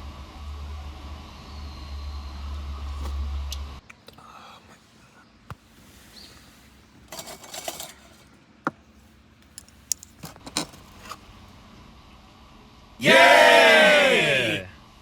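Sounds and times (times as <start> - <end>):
rattling rustle: 5.6 - 11.3
cookware and utensils clinking: 7.1 - 8.4.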